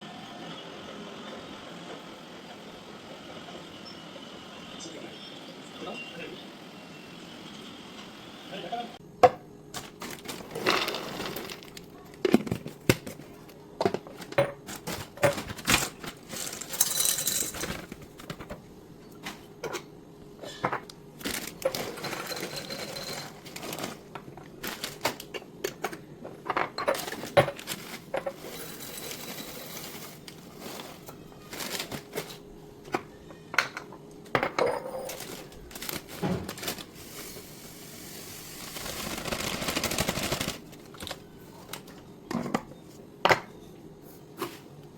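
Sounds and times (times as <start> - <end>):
containers clinking and knocking: 13.8 - 18.6, 20.4 - 24.3.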